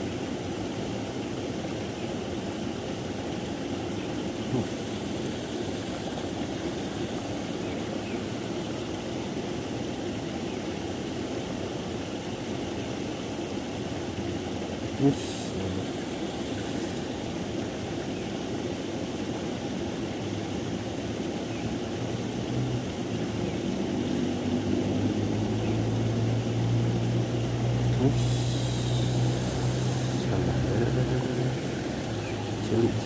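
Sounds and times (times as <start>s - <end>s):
low engine drone: 2.7s - 9.7s, 13.9s - 33.0s
background rush: 21.9s - 33.0s.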